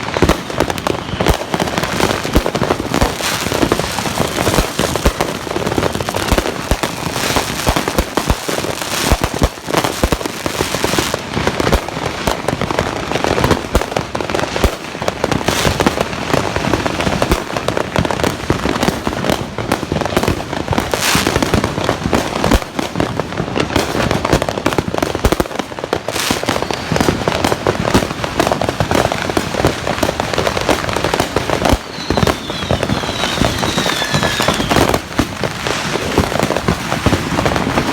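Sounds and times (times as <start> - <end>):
fireworks crackling and banging: 0.0 - 37.9
faint falling whistles: 31.8 - 34.9.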